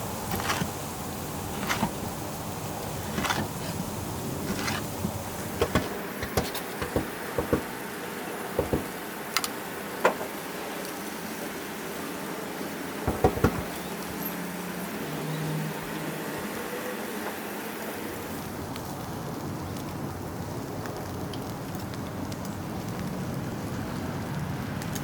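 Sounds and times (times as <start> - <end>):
fat popping and crackling: 0.0 - 7.8, 8.4 - 9.5, 13.1 - 14.2
steak sizzling on a grill: 0.0 - 24.5.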